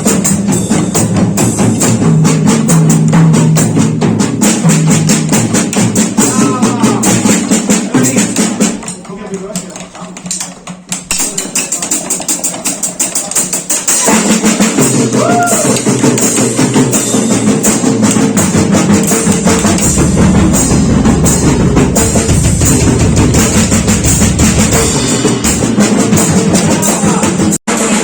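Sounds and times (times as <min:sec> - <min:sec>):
drum kit playing fast groove: 0:00.0 - 0:28.0
pitched backing music: 0:00.0 - 0:28.0
deep bass: 0:18.4 - 0:27.3.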